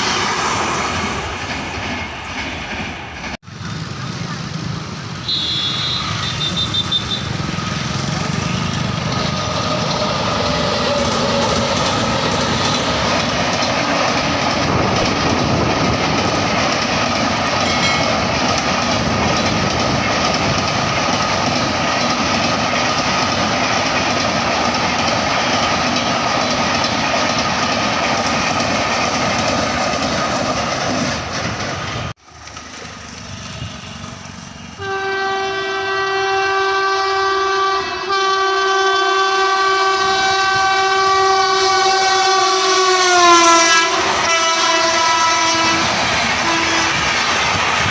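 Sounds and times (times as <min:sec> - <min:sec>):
train wheels rushing on rails: 0:00.0 - 0:47.9
train horn: 0:05.2 - 0:11.6, 0:33.3 - 0:47.2.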